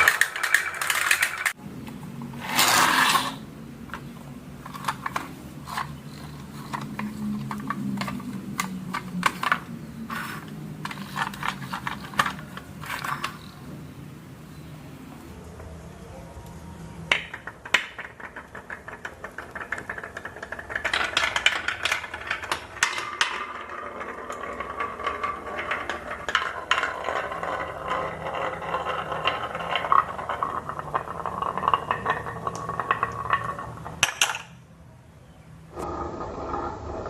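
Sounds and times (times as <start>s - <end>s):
marbles rolling and clattering: 0.0s - 1.6s, 2.2s - 13.8s, 17.1s - 34.7s.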